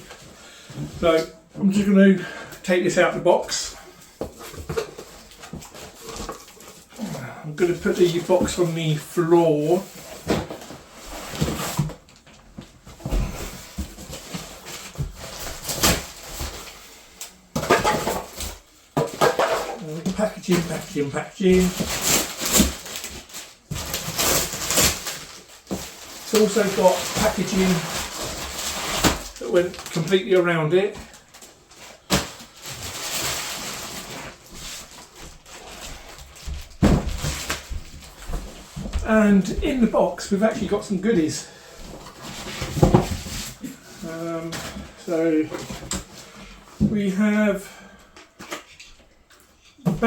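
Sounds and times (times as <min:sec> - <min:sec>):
cardboard and foam packaging rustling: 0:00.0 - 0:50.0
packaging scraping and knocks: 0:04.1 - 0:09.1, 0:09.8 - 0:16.9, 0:17.5 - 0:39.9, 0:41.8 - 0:46.6.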